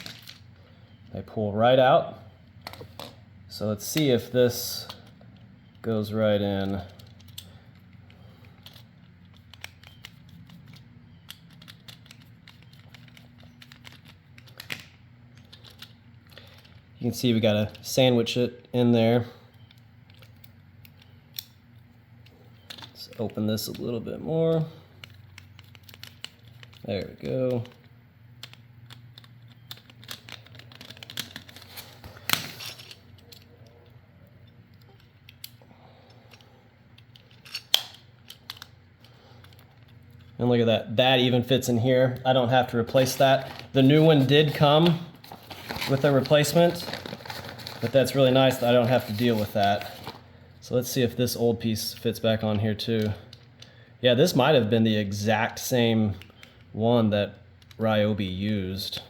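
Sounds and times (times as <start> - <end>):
plastic parts clicking and rattling: 0.0 - 0.7, 3.8 - 18.0, 19.5 - 40.4, 42.1 - 50.2
low steady hum: 0.0 - 59.0
small clicks of plug parts: 28.4 - 31.6, 34.4 - 38.7.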